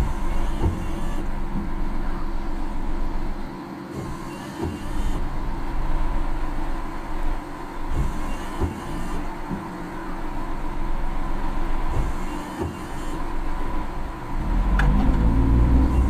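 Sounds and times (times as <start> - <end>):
car cabin rumble: 0.0 - 16.0
rain: 5.2 - 8.0.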